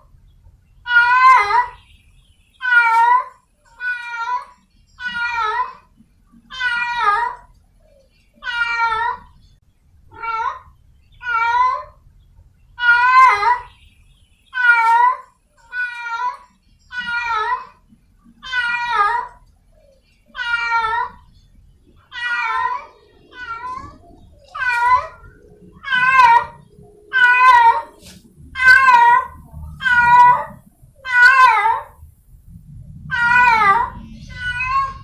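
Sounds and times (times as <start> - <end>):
cat yowling: 0.9 - 1.8, 2.6 - 5.8, 6.5 - 7.5, 8.4 - 9.3, 10.1 - 12.0, 12.8 - 13.7, 14.6 - 17.8, 18.4 - 19.4, 20.4 - 21.2, 22.1 - 32.0, 33.1 - 35.0.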